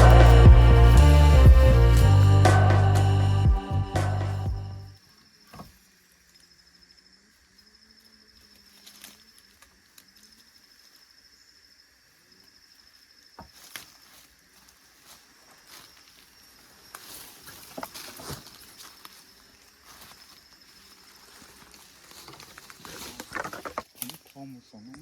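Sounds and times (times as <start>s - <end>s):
background music: 0.0s - 4.9s.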